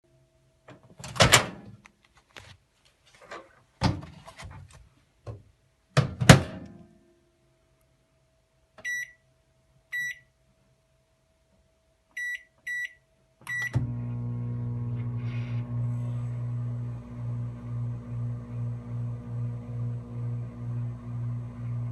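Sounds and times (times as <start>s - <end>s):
keypad beeps: 12.2s - 13.7s
microwave oven humming: 13.5s - 21.9s.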